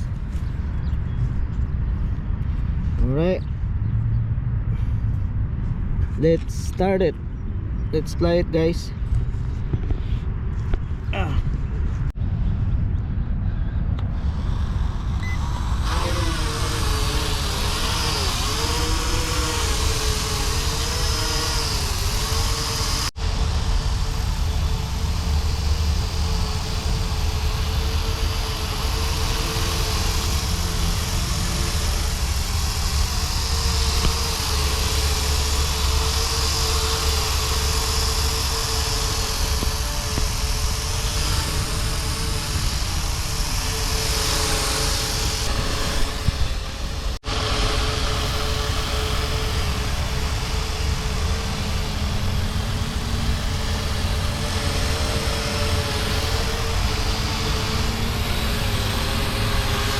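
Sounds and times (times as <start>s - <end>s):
wind rumble on microphone: 0.0s - 19.2s, 19.8s - 59.9s
drone motors and propellers whine: 0.0s - 59.9s.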